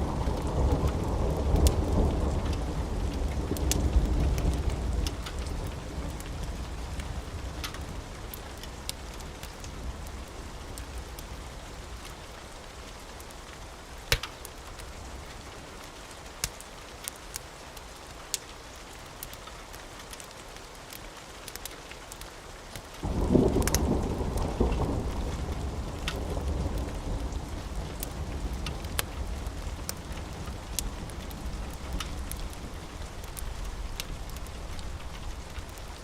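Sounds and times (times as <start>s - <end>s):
thunder rumble: 0.0s - 12.1s, 23.0s - 36.0s
steady rain: 0.0s - 36.0s
sharp crackling pops: 14.1s - 14.6s.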